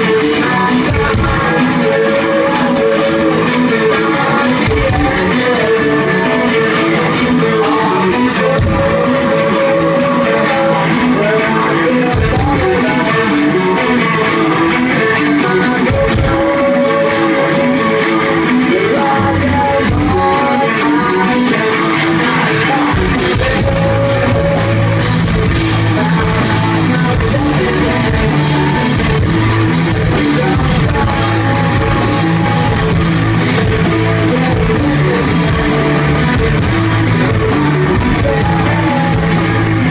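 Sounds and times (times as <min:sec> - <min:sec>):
drum kit: 0:00.0 - 0:39.9
electric guitars: 0:00.0 - 0:39.9
person singing: 0:00.0 - 0:39.9.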